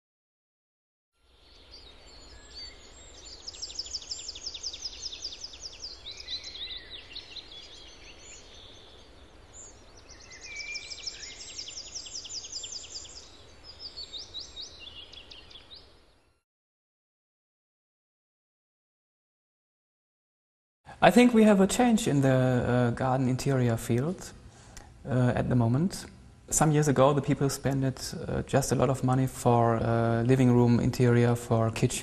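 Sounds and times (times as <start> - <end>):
outdoor background hiss: 1.2 - 16.4, 20.9 - 32.0
songbirds singing: 1.2 - 16.4.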